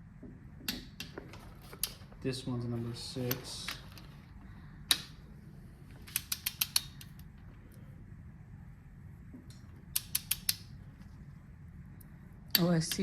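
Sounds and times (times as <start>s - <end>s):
ratchet clicks: 6.0s - 7.2s, 10.0s - 10.6s
torque wrench click: 6.1s - 7.1s.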